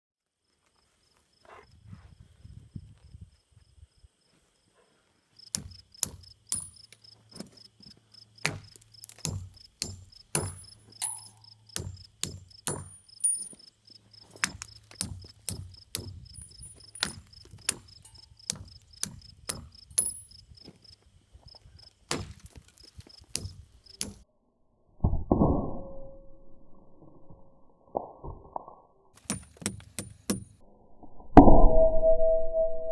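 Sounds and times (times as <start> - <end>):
insects chirping trill: 5.3 - 22.0, 22.6 - 24.2
sharp knocks: 29.2 - 30.6.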